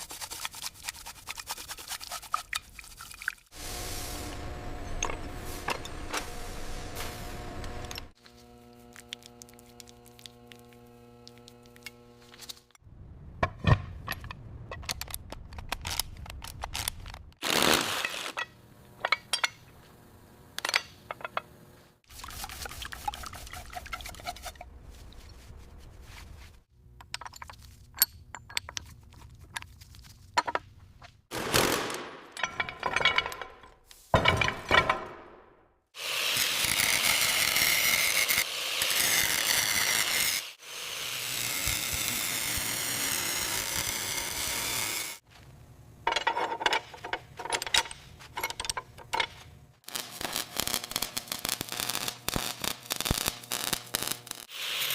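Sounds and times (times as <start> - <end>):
loud steady hissing: 3.5 - 7.8
metal clinks and knocks: 18.4 - 19.8, 27.0 - 29.7, 32.3 - 35.2, 46.0 - 49.4.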